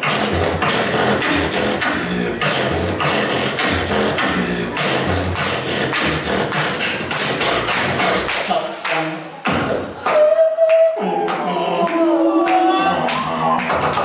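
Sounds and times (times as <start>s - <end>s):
beatboxing percussive sounds: 0.0s - 14.0s.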